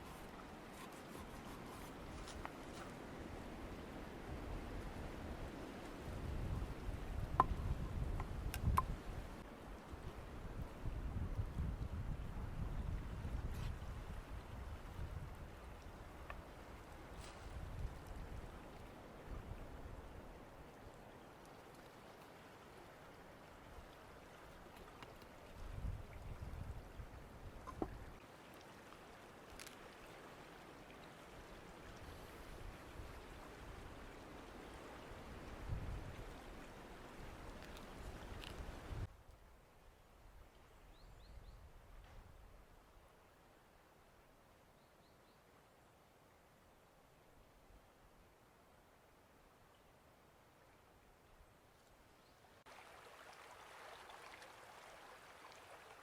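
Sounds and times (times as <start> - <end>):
steady rushing hiss: 0.0 - 2.8.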